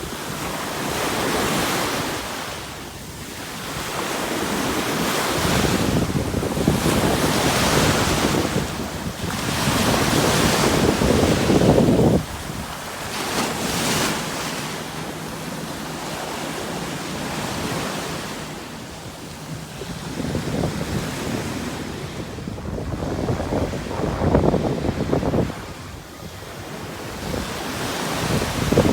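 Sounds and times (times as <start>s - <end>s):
sea waves breaking: 0.0s - 28.9s
wind rumbling on microphone: 4.6s - 13.2s, 19.0s - 28.9s.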